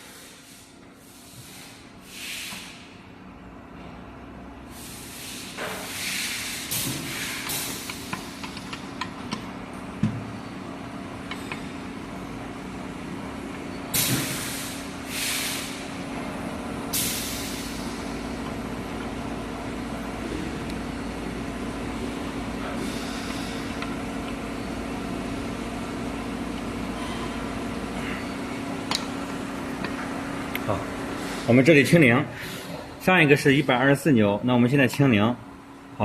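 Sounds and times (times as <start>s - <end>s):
compressed air hissing: 0.0s - 2.9s, 4.7s - 8.5s, 13.9s - 16.0s, 16.9s - 18.2s, 22.6s - 23.9s, 31.1s - 31.6s
steady machine hum: 0.0s - 36.0s.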